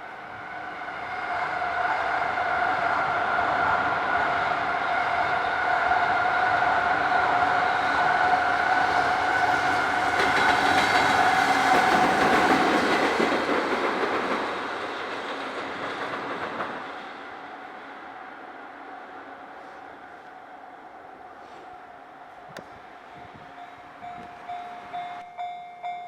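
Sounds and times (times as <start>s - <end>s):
train wheels clattering on rails: 9.0s - 17.8s
crossing warning bell ringing: 22.6s - 26.0s.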